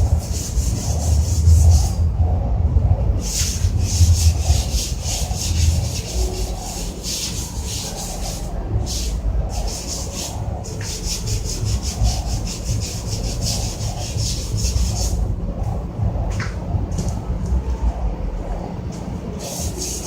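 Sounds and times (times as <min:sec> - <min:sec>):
scrubbing strokes on metal: 0:00.0 - 0:02.0, 0:03.2 - 0:15.2, 0:19.4 - 0:20.0
steady low rumble: 0:00.0 - 0:20.0.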